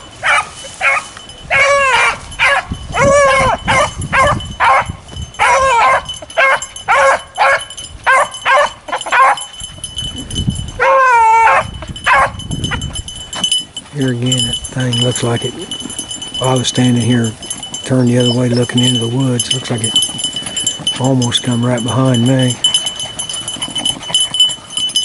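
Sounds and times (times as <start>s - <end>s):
dogs baying: 0.0s - 10.0s, 10.7s - 13.4s, 21.8s - 25.0s.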